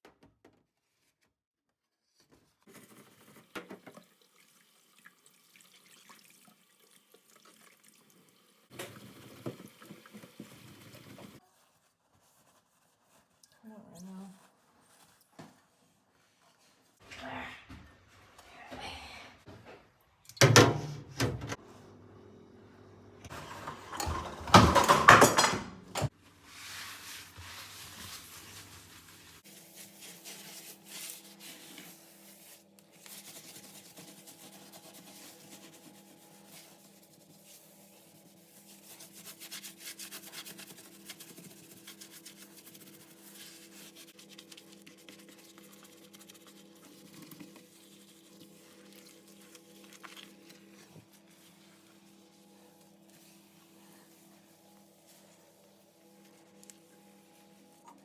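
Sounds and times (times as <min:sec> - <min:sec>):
hand scrubbing: 0:26.6 - 0:57.7.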